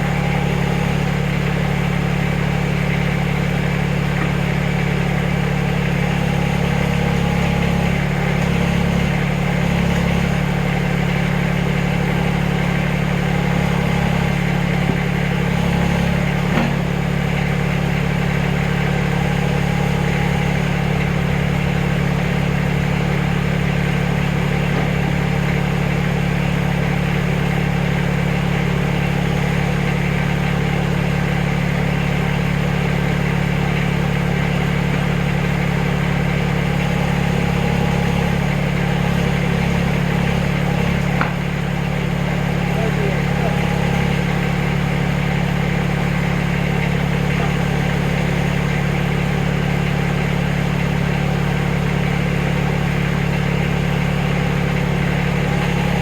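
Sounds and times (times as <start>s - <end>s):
backhoe engine running: 0.0s - 56.0s.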